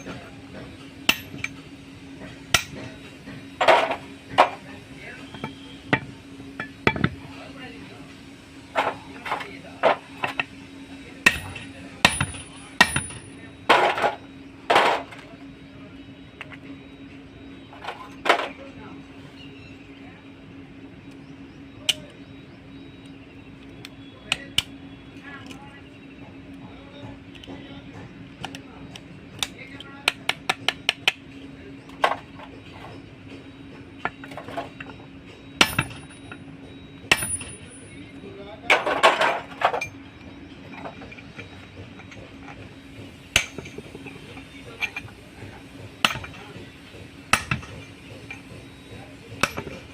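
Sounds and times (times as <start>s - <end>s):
hammer striking steel: 0.0s - 4.6s, 11.2s - 15.1s, 35.6s - 36.4s, 37.0s - 38.0s, 43.3s - 49.9s
tools tapping on steel: 0.0s - 4.6s, 5.3s - 7.2s, 11.2s - 15.2s, 26.2s - 49.9s
steady low hum: 0.0s - 49.9s
loud metal strikes ringing: 11.2s - 14.2s, 35.6s - 36.4s, 37.0s - 37.9s.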